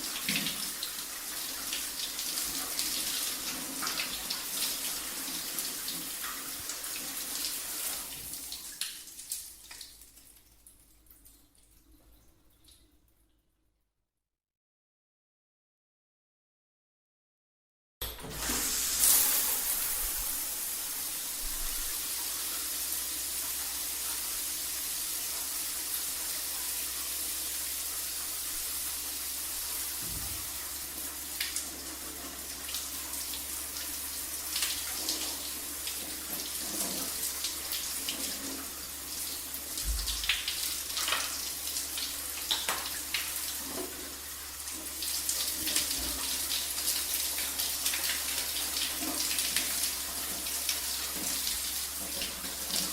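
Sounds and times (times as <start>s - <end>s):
shower running: 0.0s - 13.0s, 18.0s - 52.9s.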